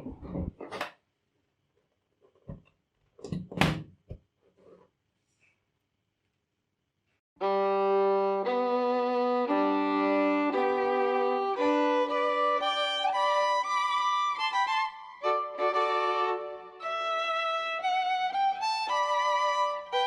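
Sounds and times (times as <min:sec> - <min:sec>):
violin playing long bowed notes: 0:07.4 - 0:20.0.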